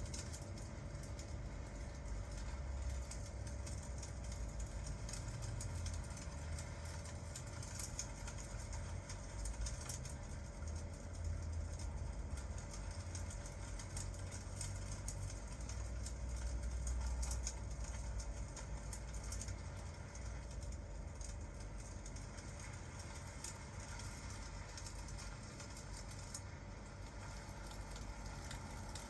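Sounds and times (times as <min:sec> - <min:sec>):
fireplace crackling: 0:00.0 - 0:29.0
rain: 0:00.0 - 0:29.0.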